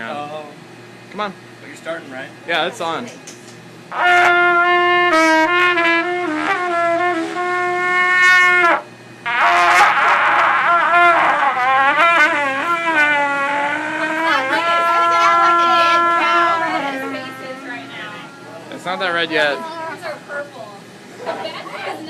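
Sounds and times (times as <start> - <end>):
trumpet notes: 3.9 - 20.2.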